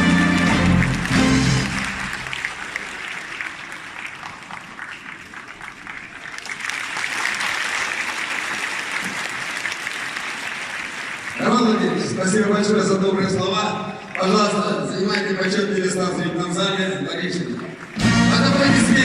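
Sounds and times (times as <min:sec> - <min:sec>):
music: 0:00.0 - 0:02.4, 0:18.0 - 0:19.0
large audience applauding: 0:00.0 - 0:12.8.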